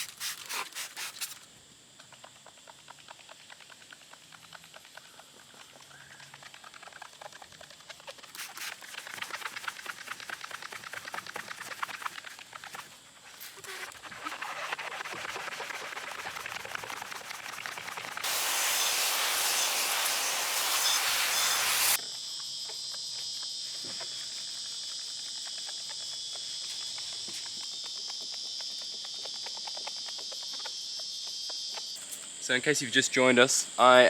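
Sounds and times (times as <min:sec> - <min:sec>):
rubbing and scrubbing on car paint: 0:00.0 - 0:01.4, 0:08.3 - 0:22.0
insects droning: 0:00.0 - 0:34.0
steady hiss: 0:15.3 - 0:22.0, 0:23.5 - 0:34.0.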